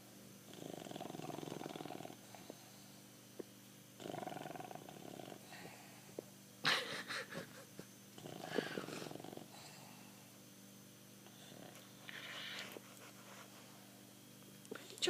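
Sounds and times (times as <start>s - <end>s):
dog snoring: 0.5s - 2.9s, 4.0s - 6.2s, 8.1s - 10.3s, 11.2s - 12.8s.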